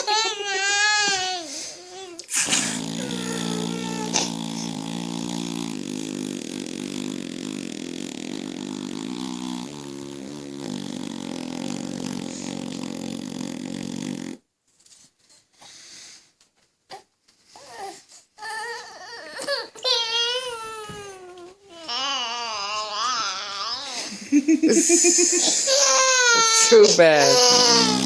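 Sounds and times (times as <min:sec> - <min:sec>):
buzzing imitation fart noise: 0:02.3 - 0:14.5, 0:24.8 - 0:28.0.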